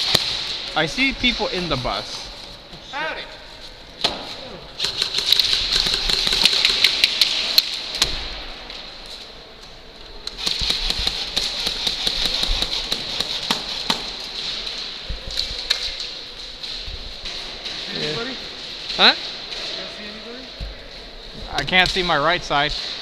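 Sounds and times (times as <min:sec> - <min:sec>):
airsoft guns firing in bursts: 0:04.8 - 0:07.8, 0:10.3 - 0:14.2.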